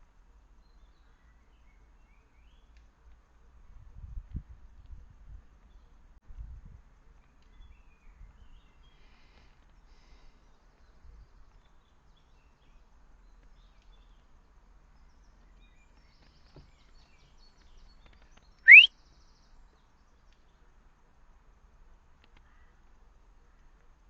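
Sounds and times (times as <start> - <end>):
faint outdoor background: 0.0 - 24.0
rising whistled bird call: 18.7 - 18.9.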